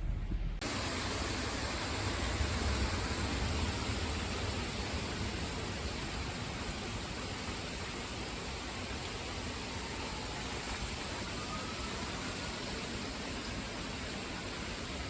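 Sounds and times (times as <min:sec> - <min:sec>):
low rumble: 0:00.0 - 0:00.6
storm wind and rain hiss: 0:00.0 - 0:15.0.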